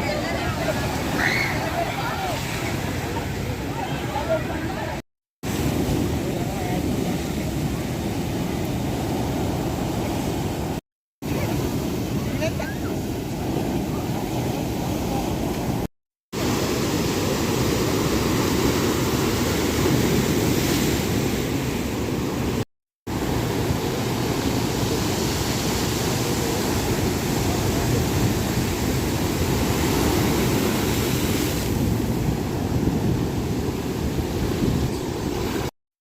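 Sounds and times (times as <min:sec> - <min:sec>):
ocean waves breaking: 0:00.0 - 0:35.7
wind on microphone: 0:23.2 - 0:35.7.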